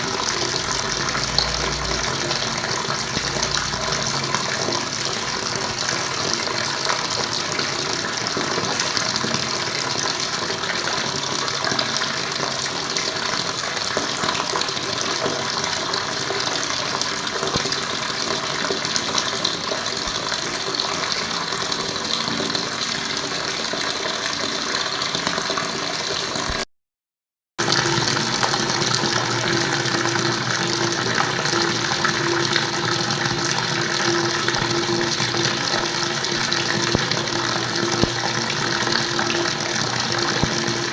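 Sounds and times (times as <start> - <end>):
water splashing: 27.6 - 40.9.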